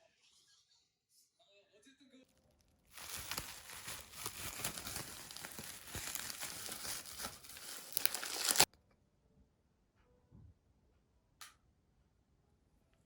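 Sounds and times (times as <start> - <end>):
crinkling and rustling: 2.4 - 8.7.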